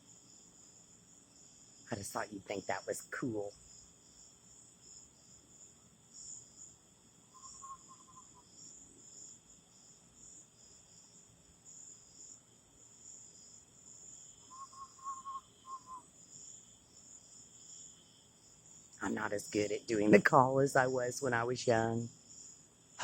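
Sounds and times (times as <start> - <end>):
crickets and night insects: 0.0 - 23.0
quavering owl trill: 7.3 - 8.4, 14.4 - 16.1.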